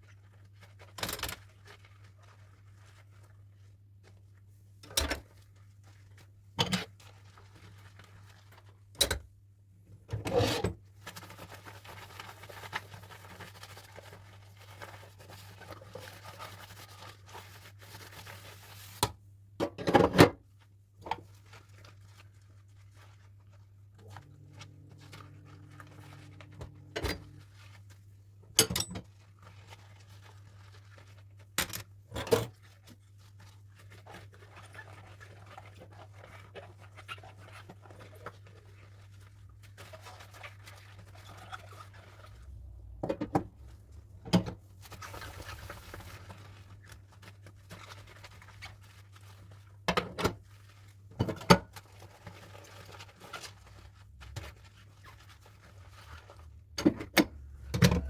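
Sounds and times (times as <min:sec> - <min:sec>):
low steady hum: 0:23.9 - 0:29.5, 0:39.0 - 0:48.4, 0:55.6 - 0:58.0.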